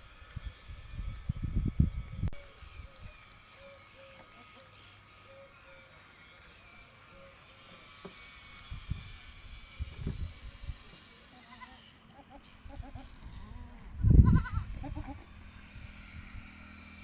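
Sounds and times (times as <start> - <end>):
goats bleating: 11.3 - 15.3.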